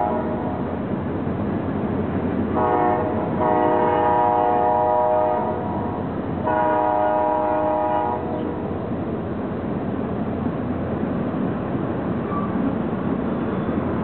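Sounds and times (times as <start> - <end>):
train horn blasts: 0.0 - 0.7, 2.5 - 8.6
train rumbling by: 0.0 - 14.0.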